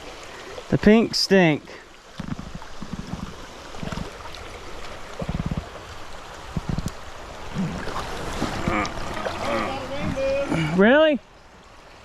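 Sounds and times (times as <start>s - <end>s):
river water flowing: 0.0s - 12.0s
low thuds in water: 6.4s - 10.6s.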